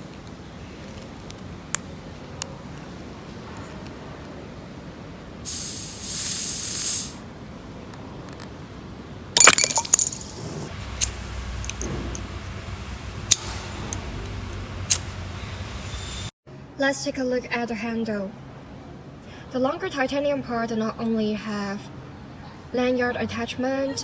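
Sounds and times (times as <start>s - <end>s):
gas hissing from bottle: 5.4s - 7.2s.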